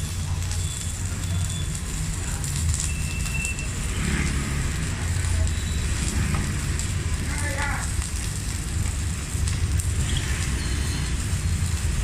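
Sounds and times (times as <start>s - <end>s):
welding arc crackling and sizzling: 0.0s - 12.0s.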